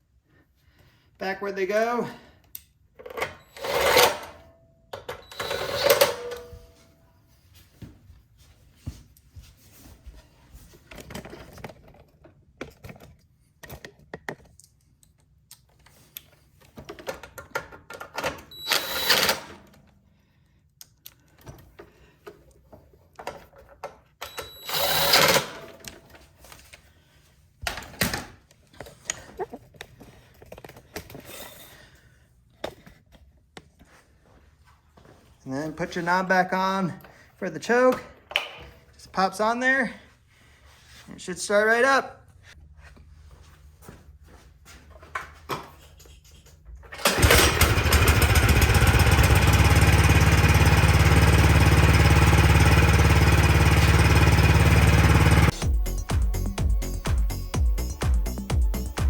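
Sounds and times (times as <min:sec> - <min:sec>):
clatter of tools and parts: 0:02.9 - 0:06.8, 0:10.8 - 0:19.9, 0:21.0 - 0:26.9, 0:27.7 - 0:33.9, 0:44.9 - 0:48.6
cordless drill driving bolts: 0:03.2 - 0:04.4, 0:05.1 - 0:06.6, 0:18.2 - 0:19.6, 0:24.2 - 0:25.9.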